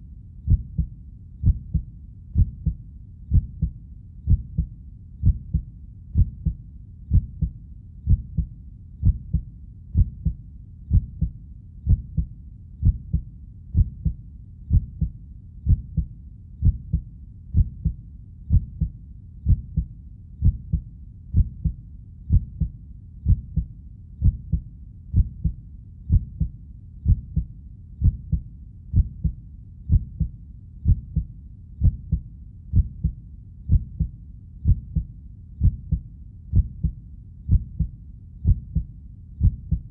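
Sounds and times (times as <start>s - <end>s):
heartbeat thumping: 0.5s - 39.9s.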